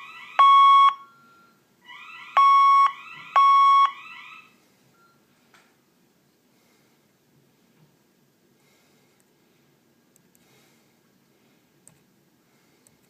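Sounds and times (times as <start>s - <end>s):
fire alarm beeps: 0.0s - 5.2s.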